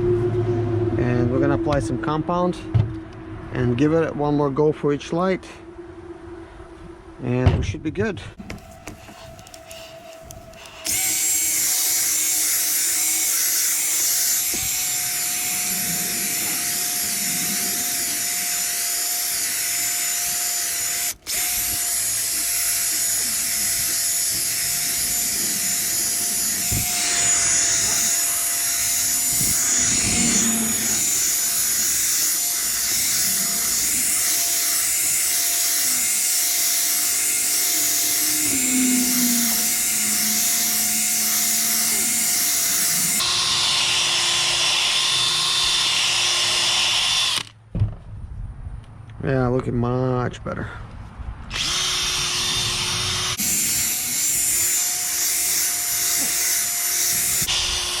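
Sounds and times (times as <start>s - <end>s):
electric drill polishing: 8.6s - 47.5s, 51.5s - 58.0s.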